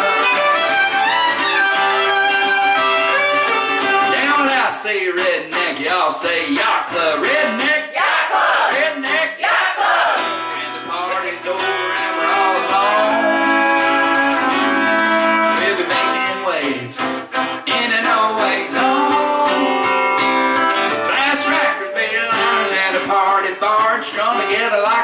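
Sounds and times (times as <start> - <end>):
acoustic guitar strumming: 0.0 - 8.0, 10.0 - 25.0
melody line bending in pitch: 12.2 - 15.6.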